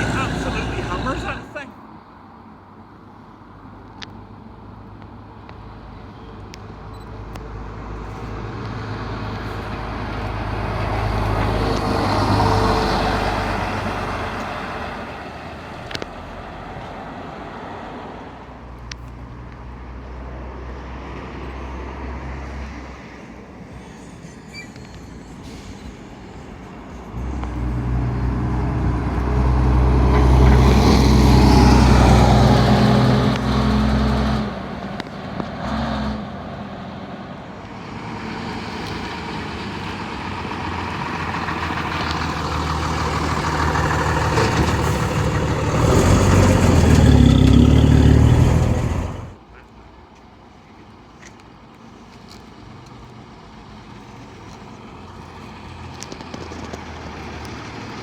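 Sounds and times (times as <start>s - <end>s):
bus engine starting up: 0.0s - 1.7s, 38.4s - 49.4s
bus engine running: 0.0s - 1.8s, 25.8s - 49.4s.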